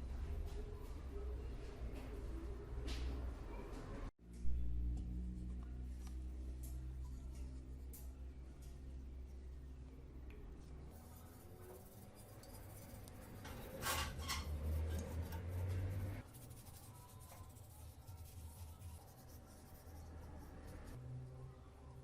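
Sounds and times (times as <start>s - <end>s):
low steady hum: 4.2s - 22.0s
scratchy rubbing: 10.8s - 21.0s.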